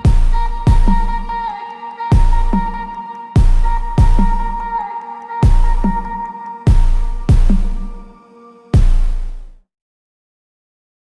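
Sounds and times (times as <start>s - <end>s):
heavy bass hit: 0.0s - 1.3s, 3.4s - 4.5s, 6.7s - 8.0s, 8.8s - 9.5s
dubstep background music: 0.0s - 9.6s.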